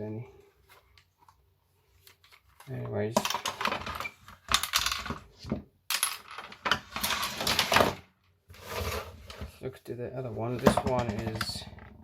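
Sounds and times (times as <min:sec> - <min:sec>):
plastic parts clicking and rattling: 0:02.0 - 0:08.0.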